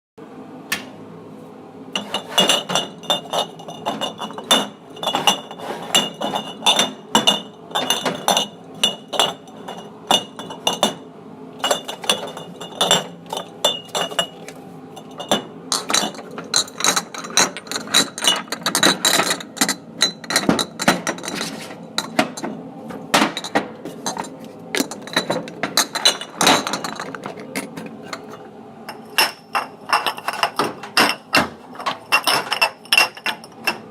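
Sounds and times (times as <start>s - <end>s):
glassware clinking: 2.0s - 11.0s, 11.6s - 14.4s, 15.0s - 22.1s, 23.2s - 27.3s, 28.1s - 33.9s.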